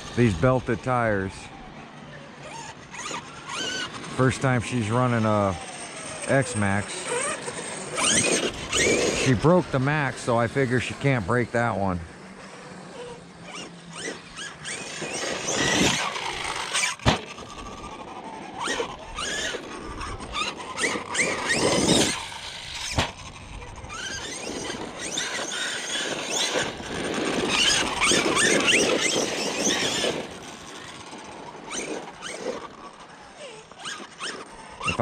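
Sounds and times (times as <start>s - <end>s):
electric motors whining: 0.0s - 35.0s
toy truck landing knocks: 17.0s - 17.4s.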